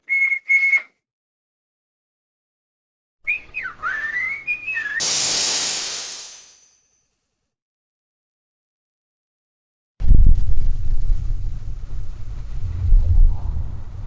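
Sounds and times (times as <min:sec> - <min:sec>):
high whistle tones: 0:00.0 - 0:01.0, 0:03.3 - 0:07.0
sliding wavering whistle: 0:00.0 - 0:01.0, 0:03.3 - 0:05.1
burst of hiss: 0:04.9 - 0:06.9.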